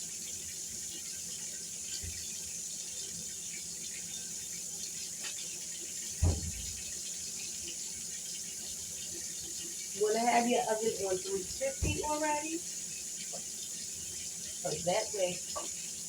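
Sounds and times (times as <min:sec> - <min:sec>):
dull thump: 0:06.2 - 0:06.8, 0:11.6 - 0:12.3.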